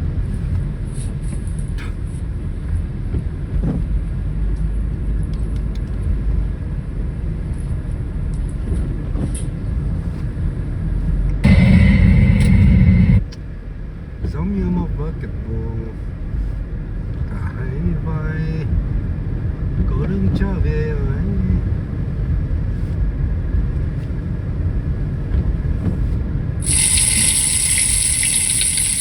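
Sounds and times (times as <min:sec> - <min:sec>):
car engine and road noise: 0:00.0 - 0:26.6
loud rush of noise: 0:11.4 - 0:13.3.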